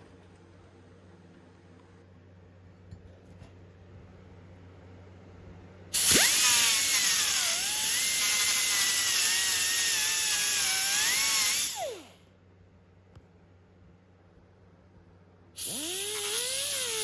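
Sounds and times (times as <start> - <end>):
die grinder whining: 6.0 - 12.2, 15.6 - 17.0.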